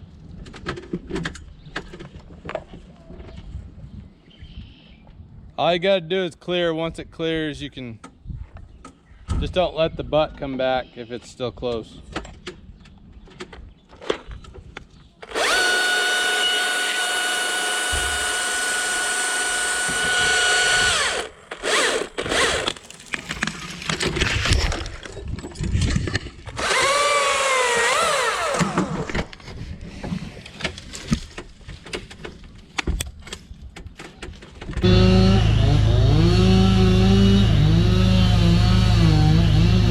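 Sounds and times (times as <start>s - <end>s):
chainsaw cutting wood: 15.2s - 24.4s, 26.5s - 29.4s, 34.8s - 39.9s.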